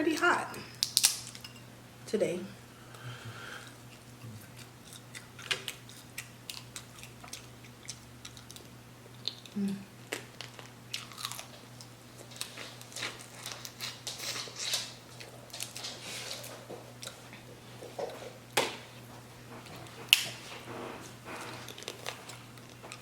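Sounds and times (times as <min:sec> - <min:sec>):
wet chewing and crunching: 0:03.7 - 0:17.4, 0:19.6 - 0:23.0.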